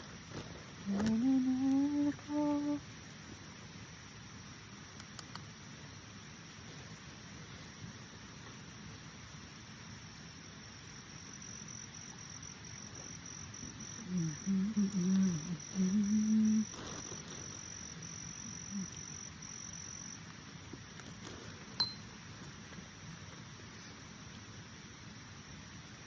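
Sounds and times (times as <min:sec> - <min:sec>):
insect trilling: 0:11.5 - 0:22.6.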